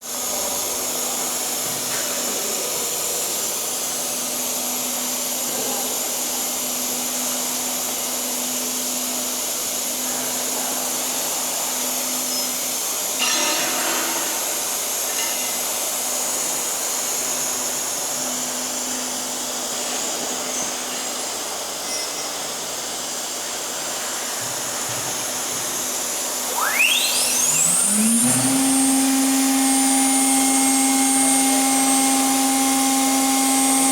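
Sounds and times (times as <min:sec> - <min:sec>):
machine spindle whine: 0:24.4 - 0:33.9
brief burst of noise: 0:26.5 - 0:28.6.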